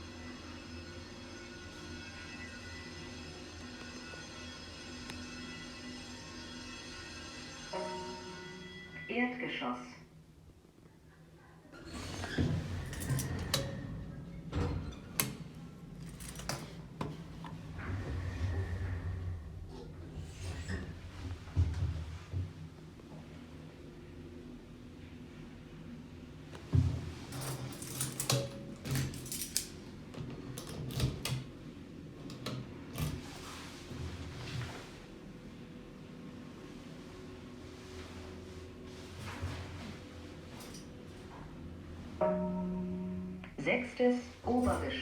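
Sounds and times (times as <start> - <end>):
elevator door motor humming: 11.7 - 43.5.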